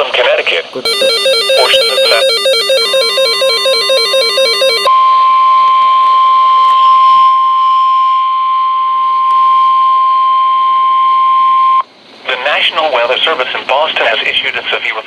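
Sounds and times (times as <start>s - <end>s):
steady warning alarm tone: 0.9s - 4.9s
warbling digital alert burst: 0.9s - 4.9s.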